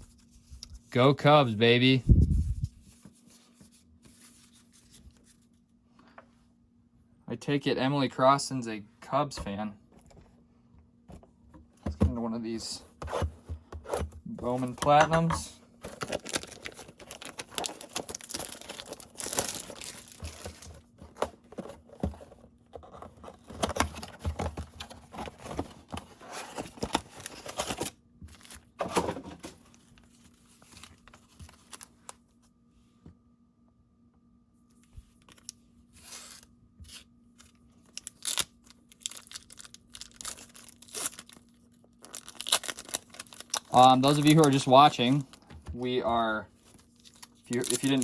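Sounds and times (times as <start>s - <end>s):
cards rustling: 14.4s - 22.1s, 39.0s - 48.0s
foil wrappers crinkling: 15.8s - 20.8s, 37.5s - 45.5s, 46.6s - 48.0s.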